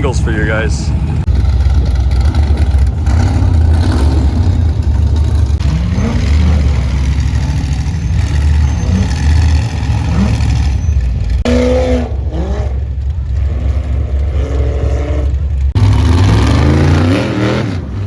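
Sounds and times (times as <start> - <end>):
engines revving: 0.0 - 18.0
race car engines rumbling: 0.0 - 18.0.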